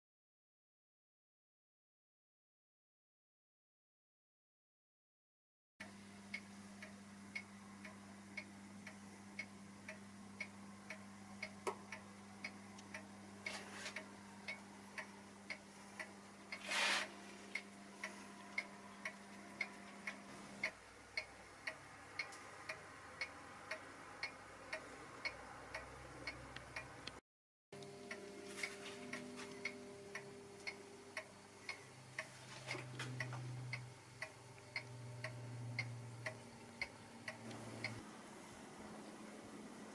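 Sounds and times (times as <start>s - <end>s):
steady low hum: 5.8s - 27.2s, 27.8s - 39.9s
regular ticking: 6.3s - 16.6s, 17.4s - 27.2s, 29.0s - 38.0s.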